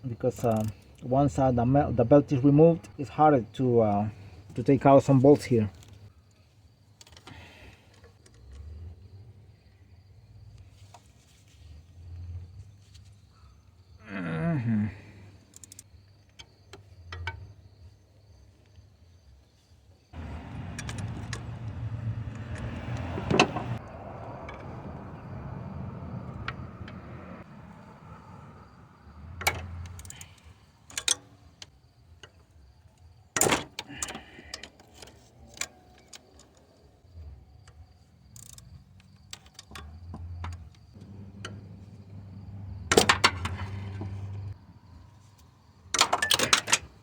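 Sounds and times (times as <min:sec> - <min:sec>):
metal tools clanking on engine: 0:20.2 - 0:21.8, 0:42.8 - 0:44.6, 0:45.9 - 0:47.0
low rumbling: 0:20.2 - 0:30.0, 0:40.9 - 0:45.0.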